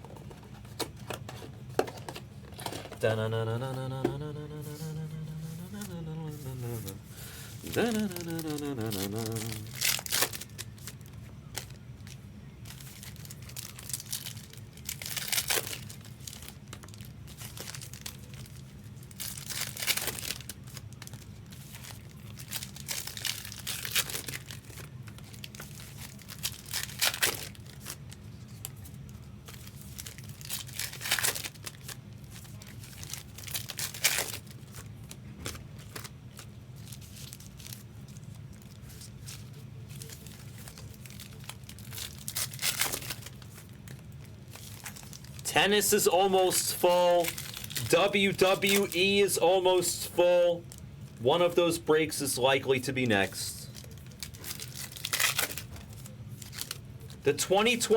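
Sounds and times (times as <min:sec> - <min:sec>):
steady low hum: 0:00.0 - 0:57.9
wrappers tearing and crinkling: 0:01.8 - 0:50.8, 0:53.2 - 0:57.9.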